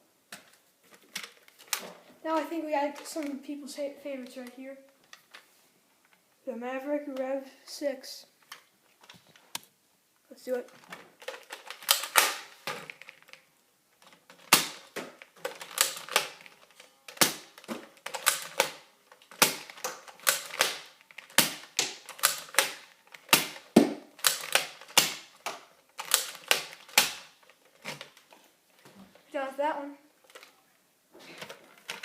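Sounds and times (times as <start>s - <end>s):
toy gun plastic clacks: 14.0s - 28.2s.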